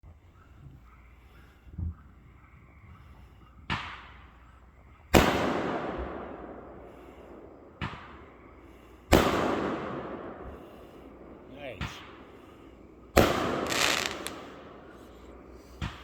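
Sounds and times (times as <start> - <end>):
sharp firework bangs: 5.1 - 8.4, 9.0 - 12.5, 13.1 - 16.0
distant firework thump: 7.8 - 8.2, 15.8 - 16.0.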